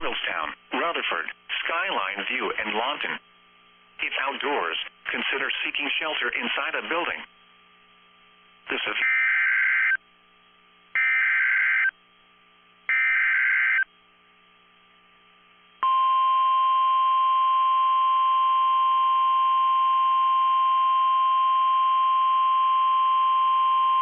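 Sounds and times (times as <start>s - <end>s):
steady warning alarm tone: 9.0s - 10.0s, 11.0s - 12.0s, 12.9s - 13.9s.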